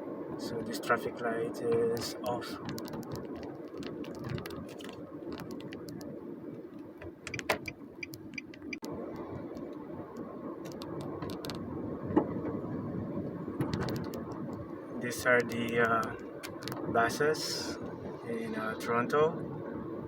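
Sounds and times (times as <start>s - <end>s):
car engine and road noise: 0.0s - 20.0s
light clicks and ticks: 1.6s - 9.8s, 13.6s - 17.8s.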